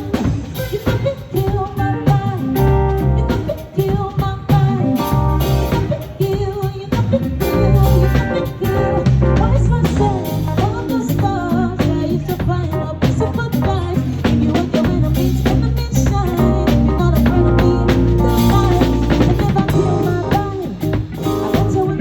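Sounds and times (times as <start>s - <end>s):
live band playing: 0.0s - 22.0s.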